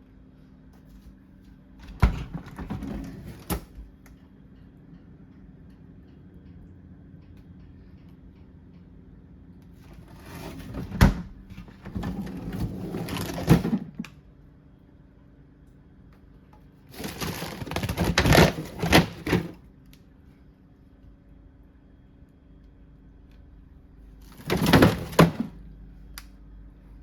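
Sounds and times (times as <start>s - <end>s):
rustling and clattering objects: 1.8s - 3.9s, 9.8s - 14.0s, 16.9s - 19.6s, 24.2s - 25.6s.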